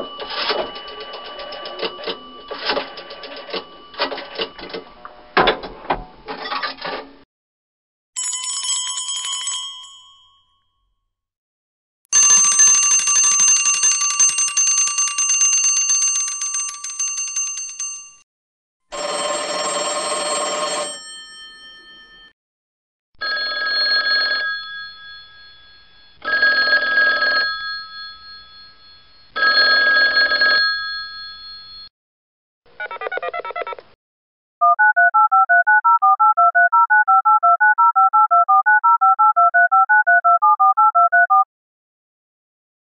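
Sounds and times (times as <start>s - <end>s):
telephone bell ringing: 0.0s - 4.5s, 8.2s - 10.5s, 12.1s - 18.2s, 18.9s - 22.4s, 23.2s - 31.9s.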